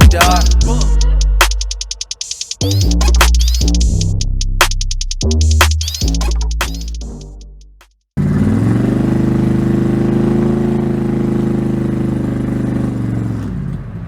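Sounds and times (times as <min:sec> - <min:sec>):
car engine running: 0:08.2 - 0:14.0.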